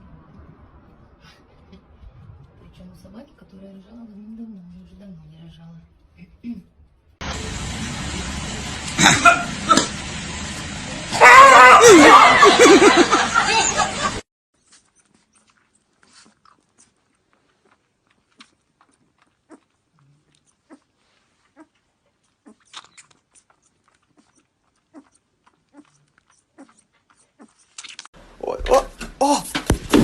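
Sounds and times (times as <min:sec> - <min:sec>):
dog whining: 0:22.4 - 0:27.7.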